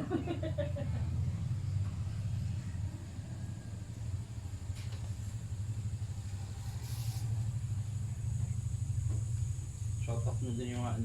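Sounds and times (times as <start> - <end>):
low mechanical hum: 0.0 - 11.0
soft hiss or rustle: 6.3 - 7.8.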